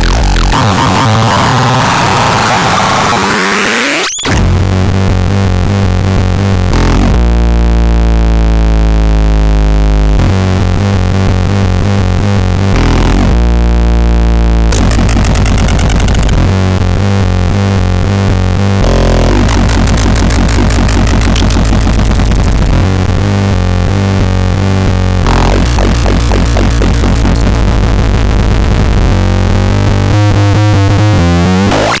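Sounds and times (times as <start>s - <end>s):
loud electronic music: 0.0s - 4.4s, 14.7s - 16.4s, 18.8s - 22.9s, 25.2s - 32.0s.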